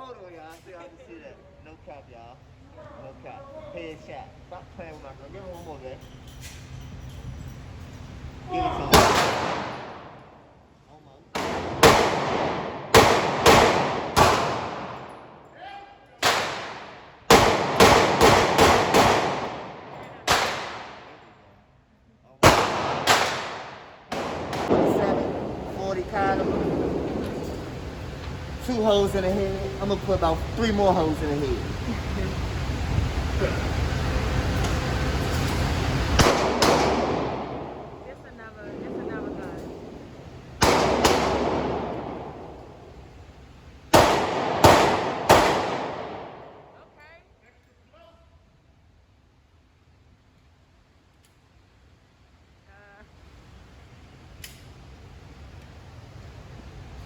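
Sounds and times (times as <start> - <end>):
handgun shots echoing: 8.9 - 10.2, 11.4 - 15.3, 16.2 - 21.2, 22.4 - 25.8, 36.2 - 38.0, 40.6 - 42.8, 44.0 - 46.7.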